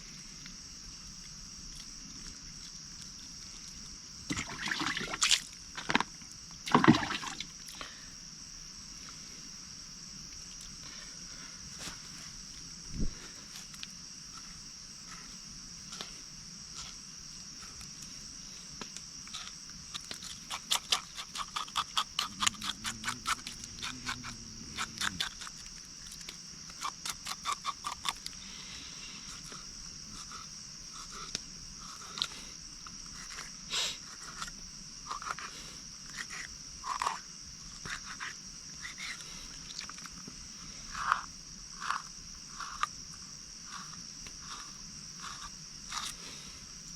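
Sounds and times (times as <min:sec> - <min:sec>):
insects trilling: 0:00.0 - 0:46.9
frogs calling in rapid clicks: 0:19.3 - 0:28.4, 0:36.1 - 0:40.1.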